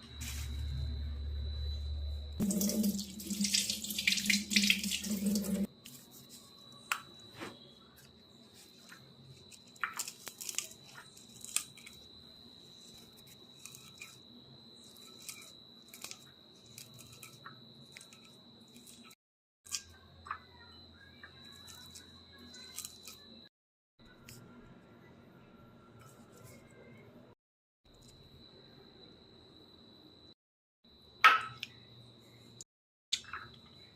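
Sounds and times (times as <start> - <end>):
tap water running into sink: 2.4 - 5.7.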